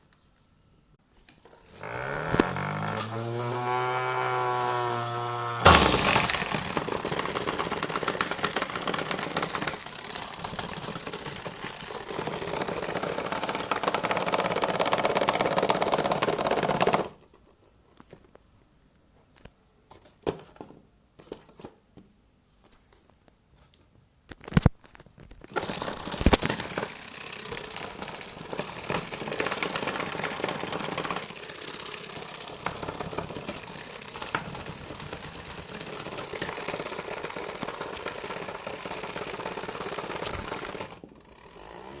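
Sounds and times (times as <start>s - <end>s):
small motor whirring: 1.5s - 15.6s, 25.5s - 42.0s
loud rough rattle: 1.6s - 17.2s, 25.5s - 42.0s.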